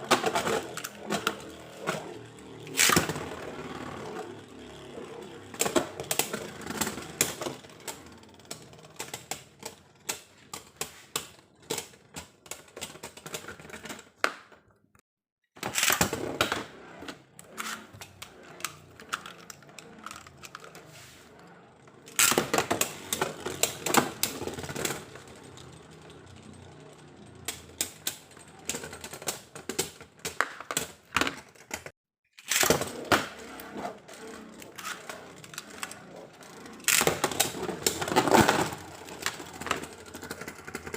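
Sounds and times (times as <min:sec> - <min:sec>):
plastic spinning top parts clicking: 0:17.4 - 0:40.9.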